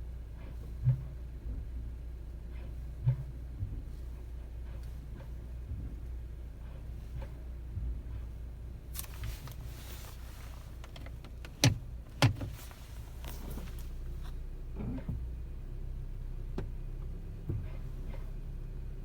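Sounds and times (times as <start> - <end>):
car low rumble: 0.0 - 19.0
sharp clunks under car: 8.9 - 18.2.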